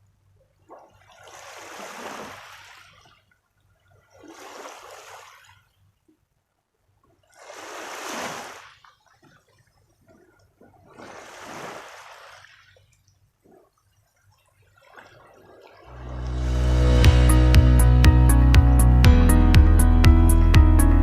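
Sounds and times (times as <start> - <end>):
small waves lapping: 0.4 - 16.8.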